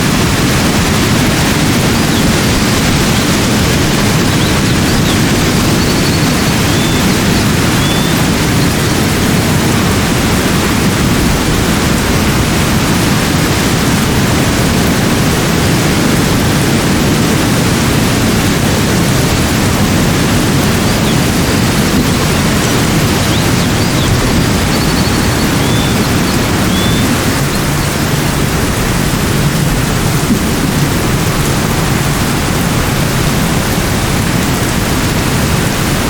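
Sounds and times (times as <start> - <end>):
outdoor nature ambience rushing: 0.0 - 36.0
faint high chirps: 4.2 - 9.0, 21.9 - 27.9.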